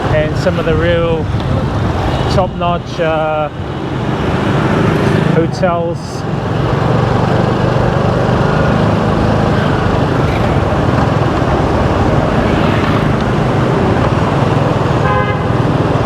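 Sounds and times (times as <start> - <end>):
road and rushing air noise: 0.0 - 16.0
motorbike engine hum: 6.2 - 16.0.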